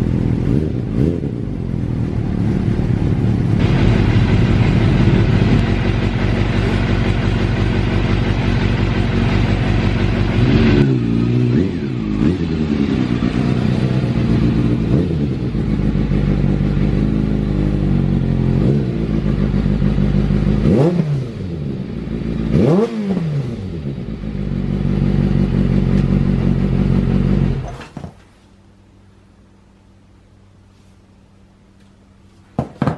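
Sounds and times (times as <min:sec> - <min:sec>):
motorcycle engine revving: 0:00.0 - 0:28.0.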